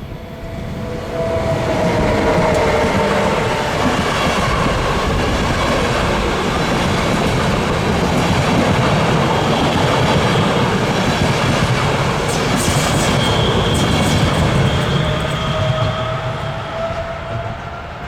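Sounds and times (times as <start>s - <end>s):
train wheels rumbling on rails: 0.0s - 18.0s
high wheel squeal: 12.3s - 18.0s.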